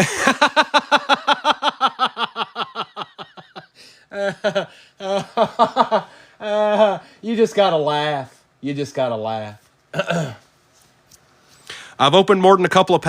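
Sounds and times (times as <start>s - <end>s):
man laughing: 0.0s - 7.1s.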